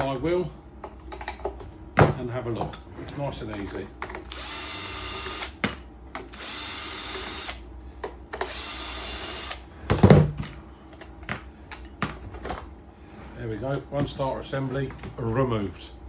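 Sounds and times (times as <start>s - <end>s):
power driver motor whine: 4.3s - 5.6s, 6.3s - 7.7s, 8.4s - 9.7s.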